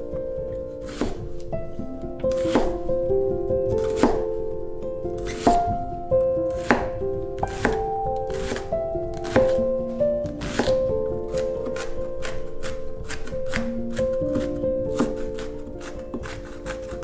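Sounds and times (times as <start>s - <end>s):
light background music: 0.0s - 17.0s
knife chopping on cutting board: 0.8s - 1.3s, 2.3s - 2.8s, 3.7s - 4.3s, 5.2s - 5.7s, 6.5s - 9.6s, 10.2s - 17.0s.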